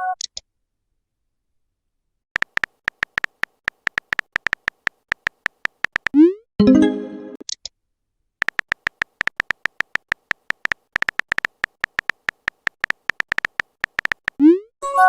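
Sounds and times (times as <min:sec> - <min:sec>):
phone keyboard typing clicks: 0:02.4 - 0:06.2, 0:08.4 - 0:14.4.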